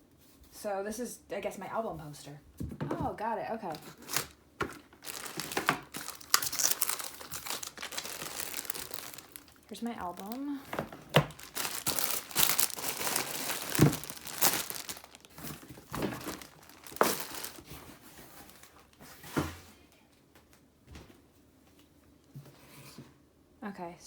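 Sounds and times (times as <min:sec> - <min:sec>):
packaging crinkling and rustling: 0:03.6 - 0:19.0.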